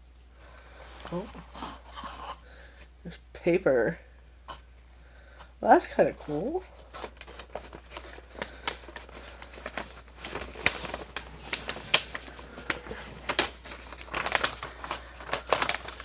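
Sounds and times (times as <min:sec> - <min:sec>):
packing paper crinkling: 0:06.6 - 0:16.0.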